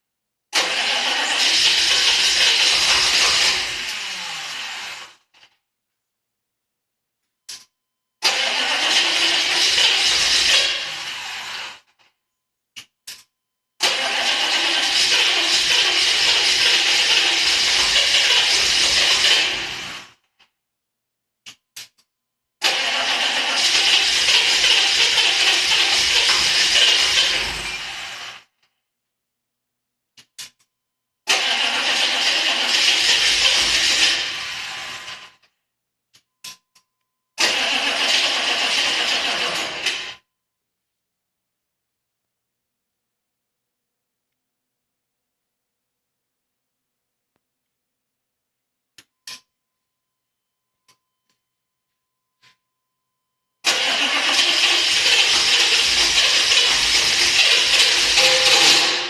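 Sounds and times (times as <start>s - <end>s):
diesel engine cranking: 0.6s - 5.2s, 8.2s - 11.8s, 13.8s - 20.1s, 22.6s - 28.4s, 31.3s - 35.3s, 37.4s - 40.2s, 53.6s - 59.0s.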